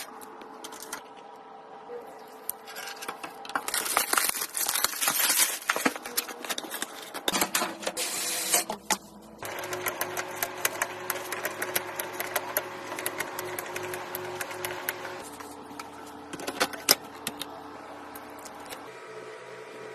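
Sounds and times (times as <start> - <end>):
small motor humming and clicking: 9.4 - 18.9.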